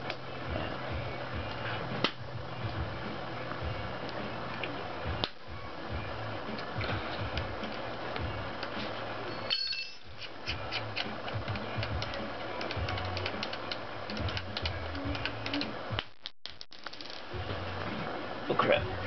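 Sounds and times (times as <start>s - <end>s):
background music with a beat: 0.0s - 18.2s.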